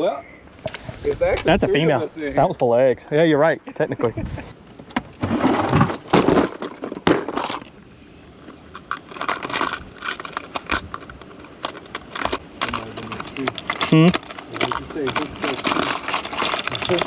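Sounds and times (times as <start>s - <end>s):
gear rattling and clattering: 8.7s - 17.0s.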